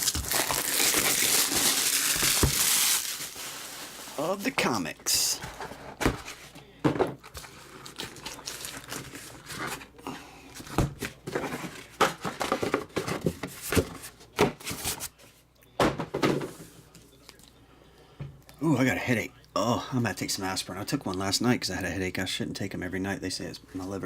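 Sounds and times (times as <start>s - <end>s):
plastic crinkling and rustling: 0.0s - 4.6s, 5.4s - 10.0s.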